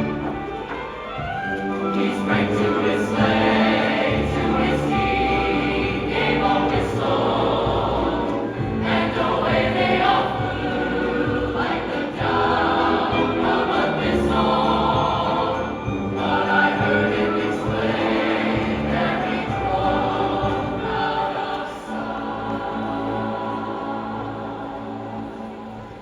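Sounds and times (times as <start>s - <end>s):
choir singing: 0.0s - 26.0s.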